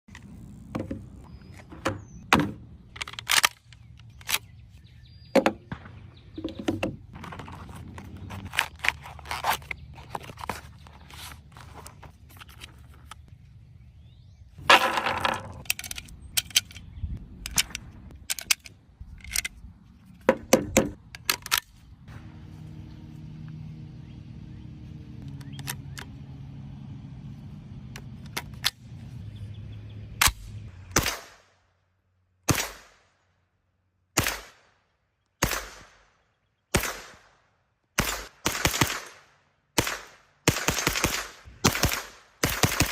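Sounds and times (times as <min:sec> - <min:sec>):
submachine gun shots: 0:38.0 - 0:39.2.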